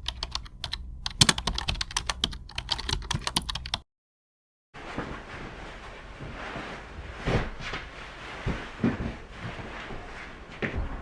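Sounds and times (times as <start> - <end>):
rapid irregular clicking: 0.0 - 3.8.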